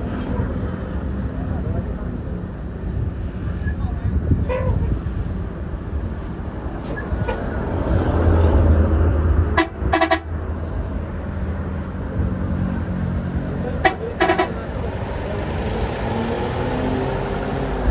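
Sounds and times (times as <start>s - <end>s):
bus engine rumbling: 0.0s - 17.9s
bus horn double toot: 6.8s - 7.5s, 9.6s - 10.3s, 13.8s - 14.8s.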